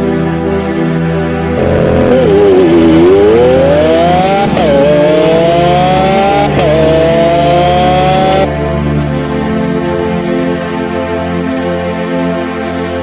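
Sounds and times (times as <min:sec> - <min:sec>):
background music: 0:00.0 - 0:13.0
sports car engine accelerating: 0:01.6 - 0:08.5.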